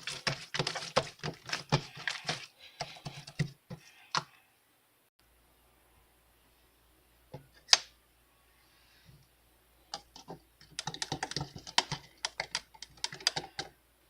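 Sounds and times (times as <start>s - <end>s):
keyboard typing: 9.9s - 13.7s.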